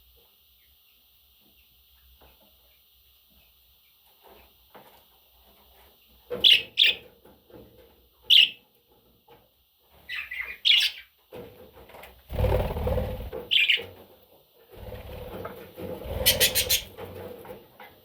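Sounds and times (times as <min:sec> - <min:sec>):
budgerigar chirping: 0:13.5 - 0:13.8, 0:16.2 - 0:16.9.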